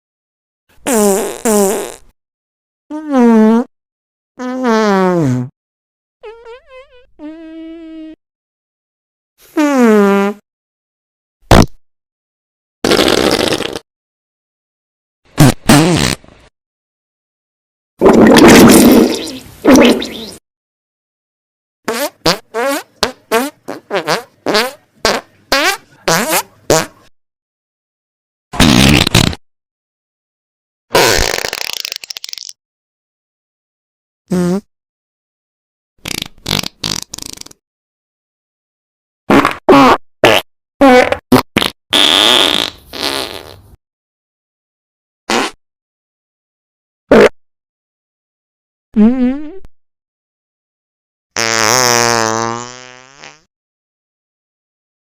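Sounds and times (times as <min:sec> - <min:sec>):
fart sound effect toots: 0:00.8 - 0:02.0, 0:02.9 - 0:03.7, 0:04.4 - 0:05.6, 0:06.2 - 0:08.2, 0:09.5 - 0:10.4, 0:11.5 - 0:11.8, 0:12.8 - 0:13.8, 0:15.4 - 0:16.2, 0:18.0 - 0:20.4, 0:28.6 - 0:29.4, 0:30.9 - 0:32.5, 0:34.3 - 0:34.7, 0:36.0 - 0:37.6, 0:39.3 - 0:43.6, 0:45.3 - 0:45.6, 0:47.1 - 0:47.4, 0:49.0 - 0:49.7, 0:51.4 - 0:53.5.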